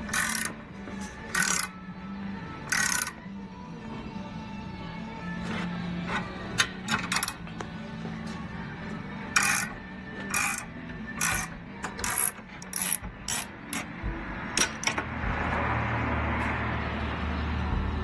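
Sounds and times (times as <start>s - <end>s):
ratchet wrench clicking: 0.0s - 0.6s, 1.3s - 1.8s, 2.6s - 3.2s, 6.9s - 7.4s, 9.3s - 13.9s.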